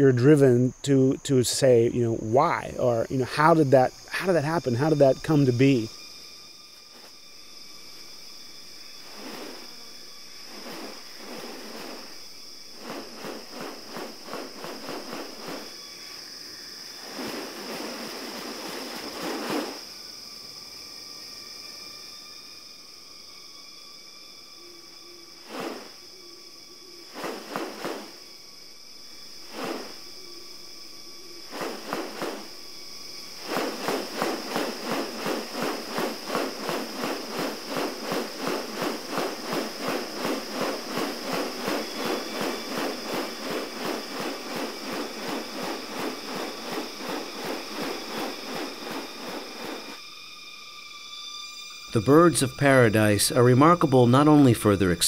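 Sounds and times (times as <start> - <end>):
high insect chorus: 0.0 - 55.0
fast regular pulses: 33.4 - 50.0.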